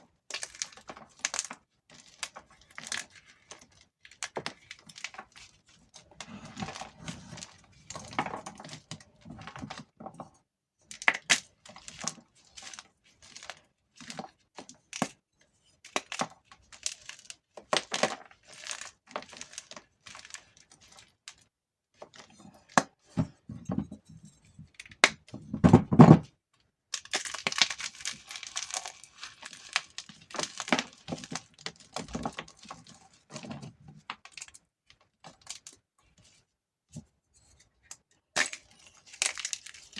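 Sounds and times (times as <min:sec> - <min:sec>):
chalk crunching and crumbling: 0:15.8 - 0:21.1, 0:27.0 - 0:33.0.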